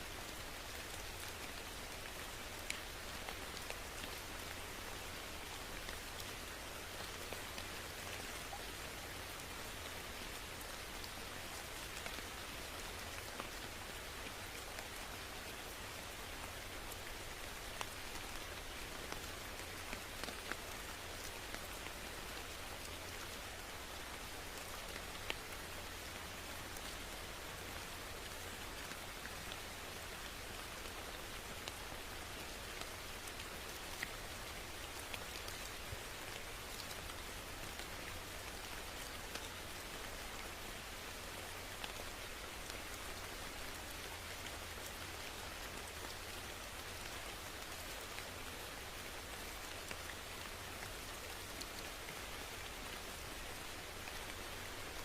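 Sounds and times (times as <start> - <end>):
rain hiss: 0.0 - 55.0
raindrop ticks: 24.6 - 25.4.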